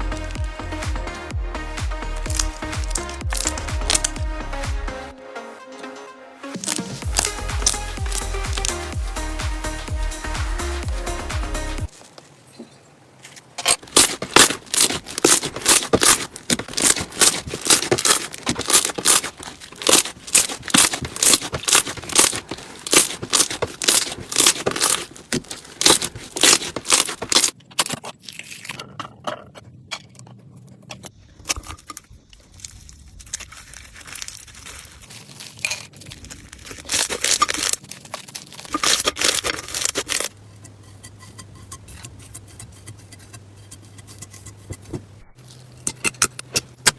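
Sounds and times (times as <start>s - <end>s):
slime crackling and popping: 1.9s - 4.2s, 6.6s - 8.9s, 13.6s - 28.7s, 32.4s - 40.3s.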